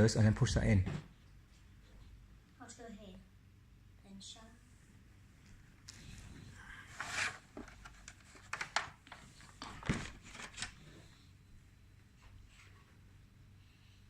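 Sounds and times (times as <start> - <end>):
cable handling rustle: 5.8 - 11.0.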